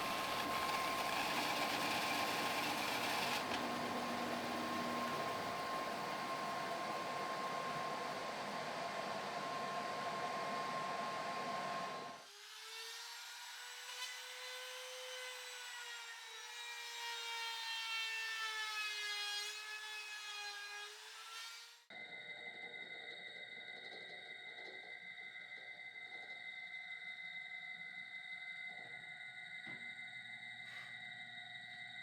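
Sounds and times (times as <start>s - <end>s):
power tool cutting wood: 0.0s - 21.7s.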